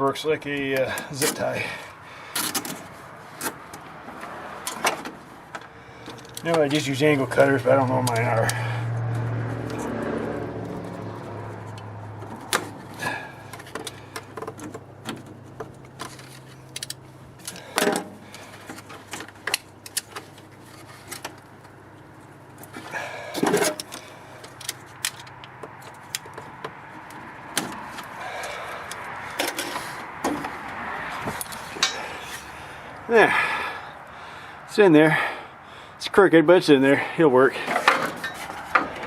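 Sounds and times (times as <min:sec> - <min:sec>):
plastic ties clicking and rattling: 0:23.6 - 0:29.9.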